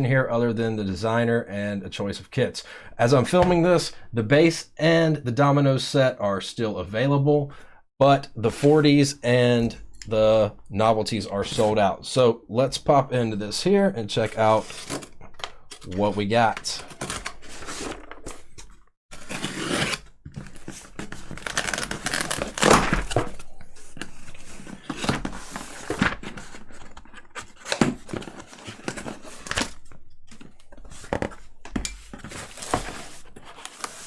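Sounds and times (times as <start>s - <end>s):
packaging tearing and crinkling: 19.1s - 23.6s.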